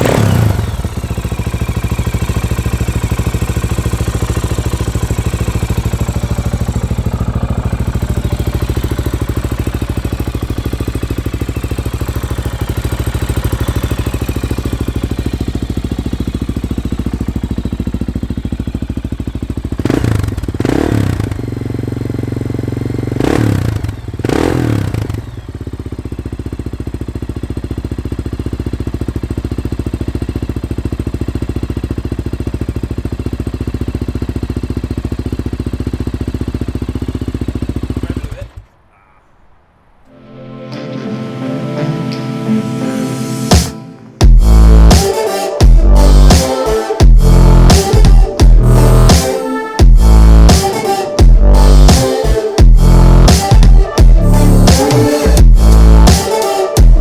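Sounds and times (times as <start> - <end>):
engine throttle blips: 0.0 - 26.0, 43.1 - 57.0
motorcycle engine idling: 0.0 - 39.1, 44.2 - 49.2.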